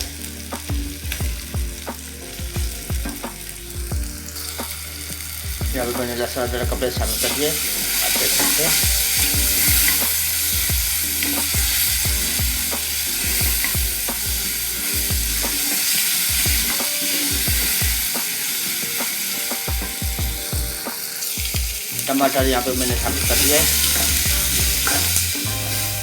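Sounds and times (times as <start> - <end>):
onions sizzling in oil: 0.0 - 26.0
spatula scraping pan: 22.8 - 26.0.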